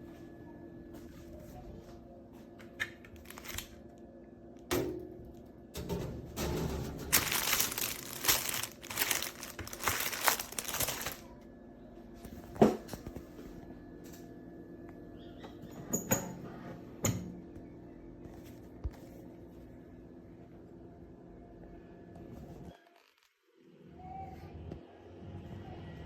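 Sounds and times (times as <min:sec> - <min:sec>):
packaging crinkling and rustling: 0:03.1 - 0:03.8, 0:07.0 - 0:11.2.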